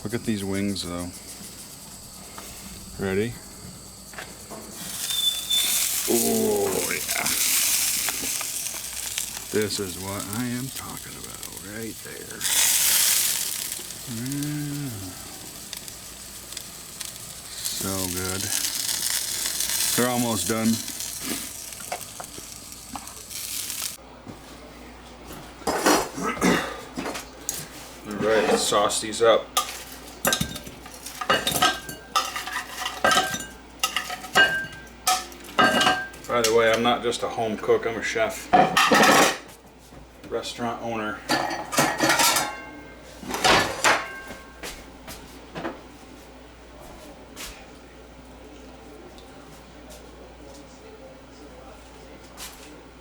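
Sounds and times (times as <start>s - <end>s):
chicken wings sizzling on grill: 0.0s - 24.0s, 27.5s - 37.2s, 41.3s - 44.4s
scrapes and clatters: 29.6s - 36.1s.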